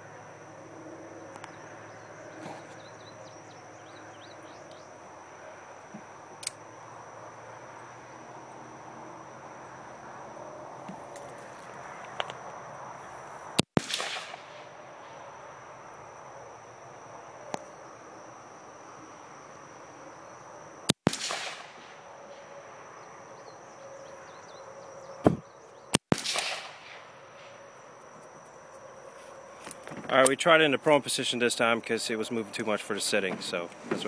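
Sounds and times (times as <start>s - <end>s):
rifle shots with echo: 13.7s - 14.8s, 21.0s - 22.1s, 26.0s - 27.5s.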